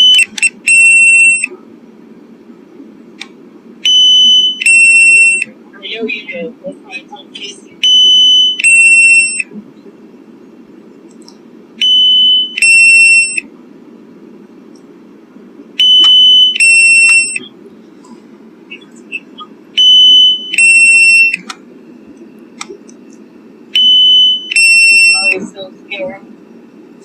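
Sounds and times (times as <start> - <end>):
two-tone alarm beep: 0.0 - 1.5, 3.8 - 5.5, 7.8 - 9.5, 11.8 - 13.5, 15.8 - 17.4, 19.8 - 21.4, 23.7 - 25.4.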